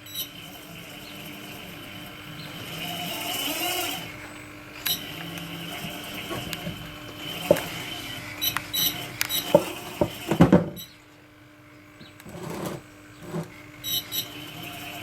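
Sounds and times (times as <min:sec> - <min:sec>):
hydraulic whine: 0:00.0 - 0:11.0, 0:12.2 - 0:15.0.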